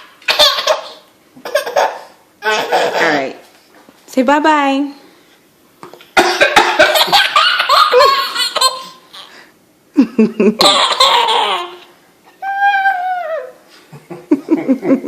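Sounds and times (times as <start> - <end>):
baby laughing: 0.0 - 3.2, 6.4 - 9.3, 10.6 - 13.6.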